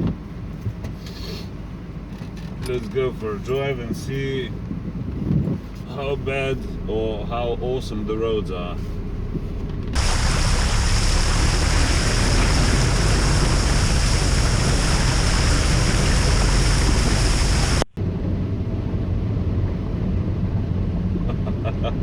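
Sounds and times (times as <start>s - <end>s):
car running: 0.0s - 22.0s
water spraying against car: 10.0s - 17.9s.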